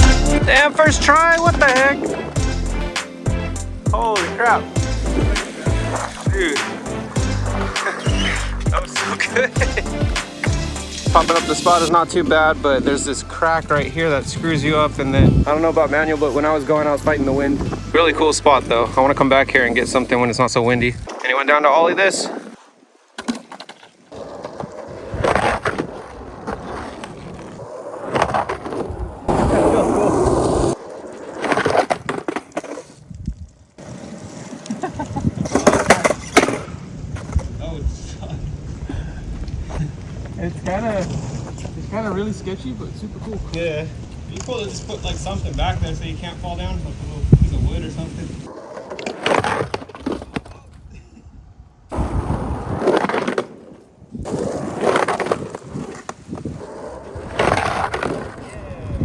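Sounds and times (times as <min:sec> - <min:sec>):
skateboard clacking: 0:00.0 - 0:03.4, 0:04.0 - 0:11.9
skateboard wheels rolling on concrete: 0:00.0 - 0:59.0.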